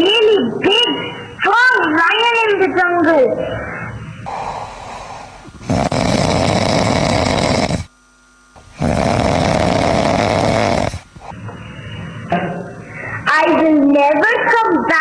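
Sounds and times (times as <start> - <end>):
loud snores: 4.2 - 7.9, 8.6 - 11.4.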